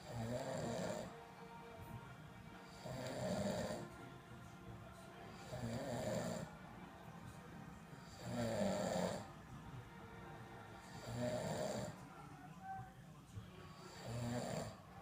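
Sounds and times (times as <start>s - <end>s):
man snoring: 0.0s - 1.2s, 2.6s - 4.0s, 5.3s - 6.5s, 8.0s - 9.3s, 10.8s - 12.0s, 13.7s - 14.9s
quiet breathing: 0.0s - 15.0s.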